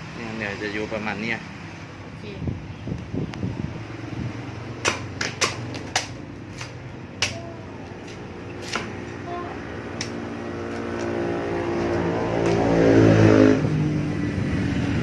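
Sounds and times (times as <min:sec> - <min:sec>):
knocks on a coconut: 0:04.8 - 0:07.4.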